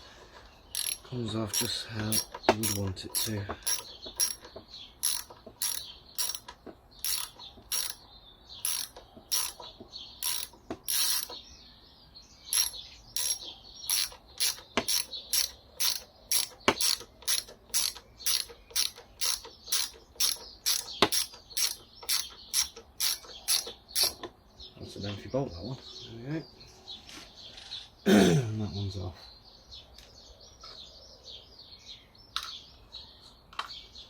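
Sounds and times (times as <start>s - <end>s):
ratchet wrench clicking: 0.7s - 8.0s, 8.6s - 11.4s, 12.5s - 24.3s.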